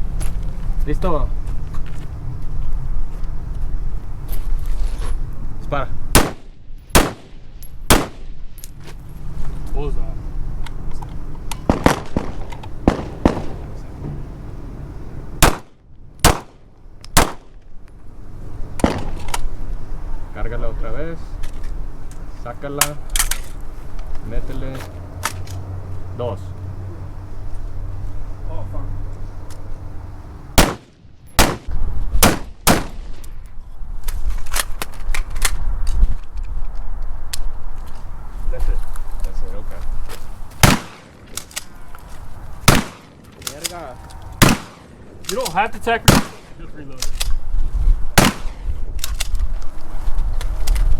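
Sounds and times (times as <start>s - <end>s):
gunshots: 6.1s - 8.3s, 11.6s - 13.8s, 15.4s - 16.6s, 17.2s - 17.5s, 18.8s - 19.3s, 30.6s - 33.2s, 40.6s - 41.2s, 42.6s - 43.2s, 44.4s - 45.4s, 46.0s - 46.6s, 48.2s - 48.6s.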